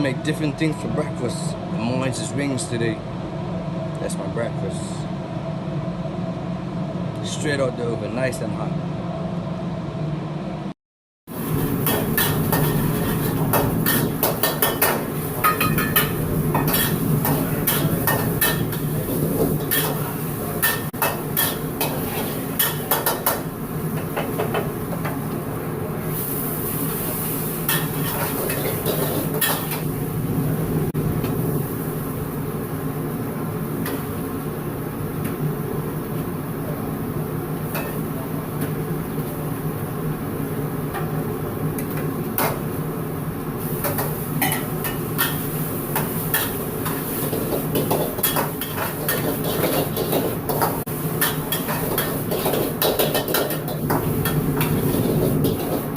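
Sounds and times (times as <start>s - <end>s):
metal utensils clattering on wok: 11.8s - 18.9s, 46.0s - 55.9s.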